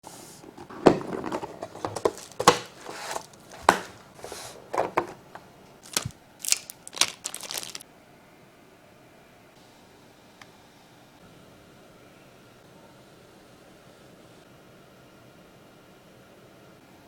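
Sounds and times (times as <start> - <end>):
packaging rustling: 0.4 - 7.8.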